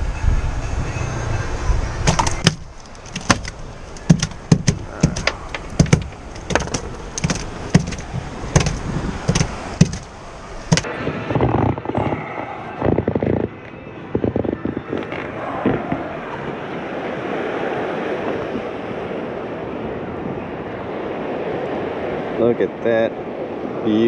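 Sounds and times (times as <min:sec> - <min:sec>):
dull rumbling noise: 0:01.8 - 0:17.5
sharp knocks and clicks: 0:02.1 - 0:10.1, 0:10.7 - 0:16.1.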